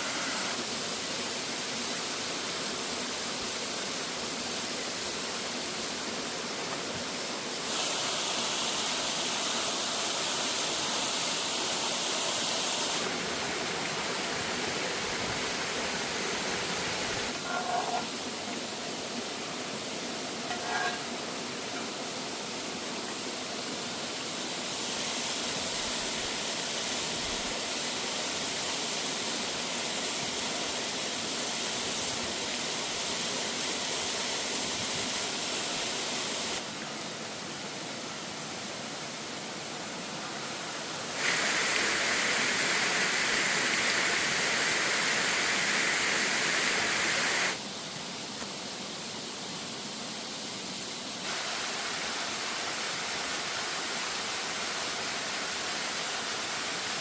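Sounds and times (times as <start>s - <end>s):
waterfall rushing: 0.0s - 48.2s, 51.2s - 57.0s.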